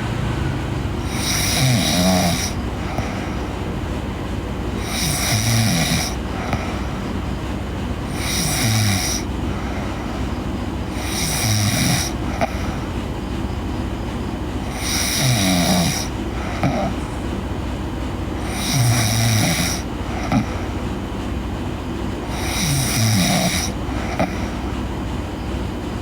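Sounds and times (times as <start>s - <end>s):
steady low rumble: 0.0s - 4.8s
girl snoring: 1.0s - 3.3s, 4.8s - 6.9s, 8.1s - 10.2s, 10.9s - 12.8s, 14.7s - 17.0s, 18.4s - 20.6s, 22.3s - 24.6s.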